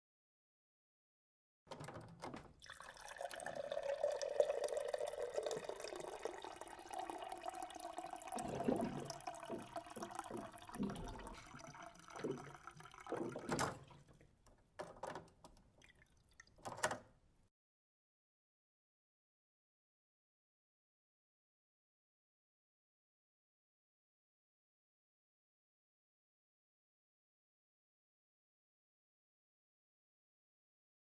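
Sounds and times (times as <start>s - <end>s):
water splashes and drips: 2.4s - 14.3s, 15.0s - 16.8s
water pouring into a cup: 2.6s - 14.0s, 15.8s - 16.6s
water gurgling: 2.6s - 14.1s.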